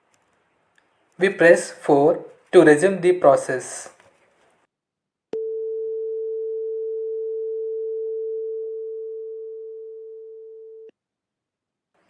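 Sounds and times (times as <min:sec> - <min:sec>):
long steady buzzer tone: 0:05.4 - 0:10.9.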